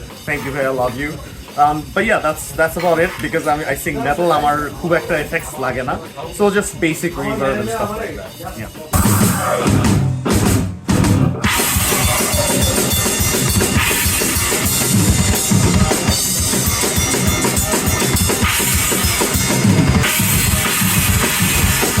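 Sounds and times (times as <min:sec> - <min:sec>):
heavy metal band: 0:08.7 - 0:22.0
fast bass drum strokes: 0:08.9 - 0:22.0.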